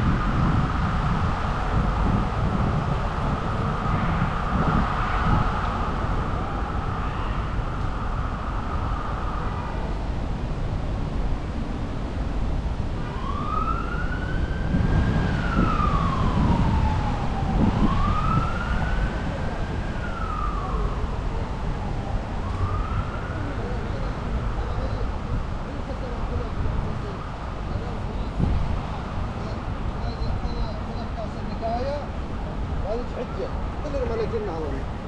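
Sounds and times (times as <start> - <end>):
emergency siren wailing: 0.0 - 10.6, 12.7 - 28.4
city traffic rumble: 0.0 - 35.0.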